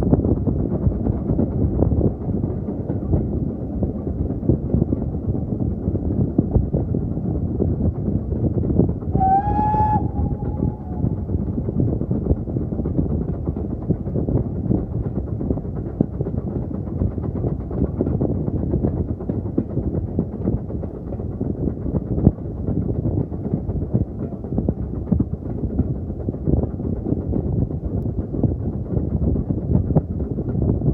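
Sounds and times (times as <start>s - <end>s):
steam train rumbling: 0.0s - 30.9s
steam whistle blast: 9.2s - 11.2s.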